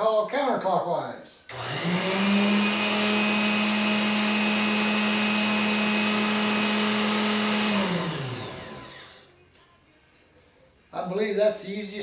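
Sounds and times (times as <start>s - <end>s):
gearmotor whining: 1.5s - 9.3s.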